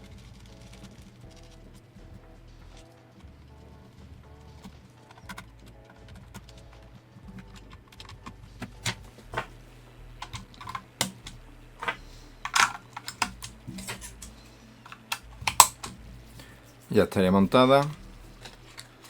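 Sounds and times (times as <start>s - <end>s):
plastic case parts clicking: 7.3s - 9.6s, 10.2s - 16.0s, 17.7s - 19.0s.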